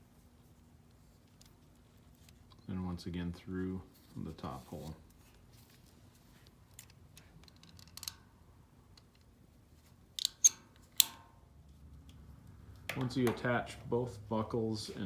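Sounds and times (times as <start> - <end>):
metallic buckle clicks: 10.2 - 11.3.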